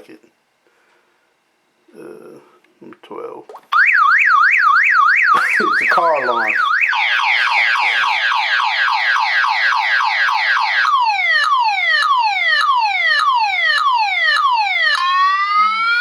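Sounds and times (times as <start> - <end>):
car alarm siren from phone speaker: 3.7 - 16.0.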